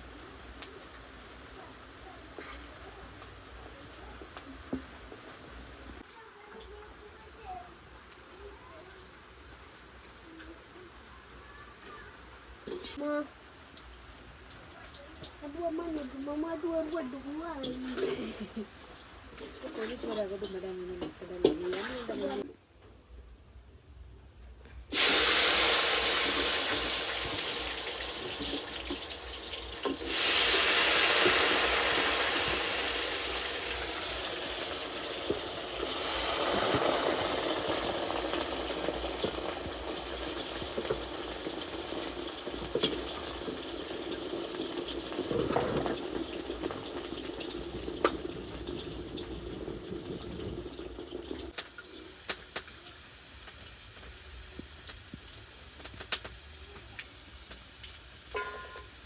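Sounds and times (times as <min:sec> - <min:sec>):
hot oil sizzling: 0:00.0 - 0:22.5, 0:24.9 - 0:59.0
light clicks and pops: 0:55.8 - 0:57.6.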